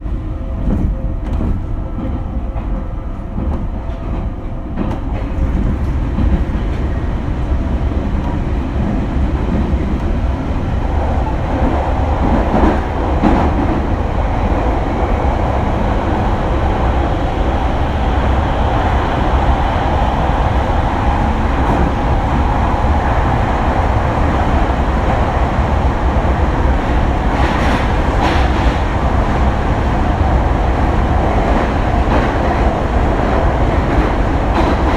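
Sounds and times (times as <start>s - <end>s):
train wheels rumbling on rail: 0.0s - 34.9s.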